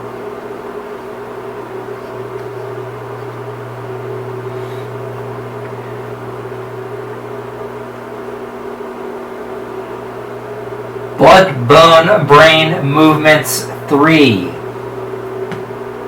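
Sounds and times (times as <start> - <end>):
steady low hum drone: 9.8 - 16.0.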